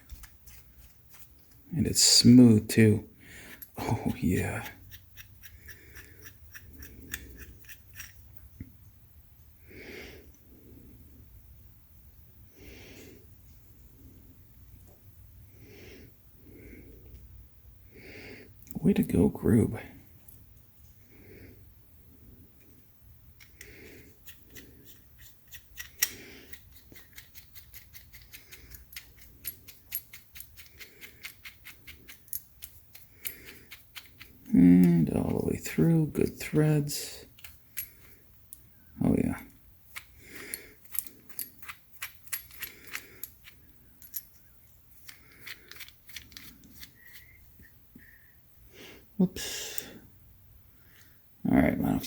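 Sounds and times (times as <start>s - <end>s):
person breathing: 3.1s - 4.1s, 5.5s - 7.5s, 9.6s - 11.4s, 12.4s - 14.4s, 15.4s - 17.2s, 17.8s - 18.6s, 21.0s - 22.5s, 23.4s - 25.0s, 26.0s - 26.7s, 33.0s - 33.8s, 40.1s - 41.5s, 45.1s - 51.3s.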